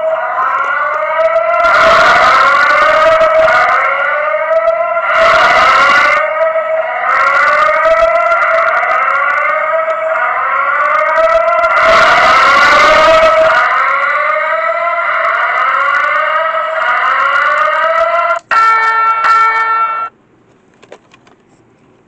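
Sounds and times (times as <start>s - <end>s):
fire alarm siren tone: 0.0s - 20.1s.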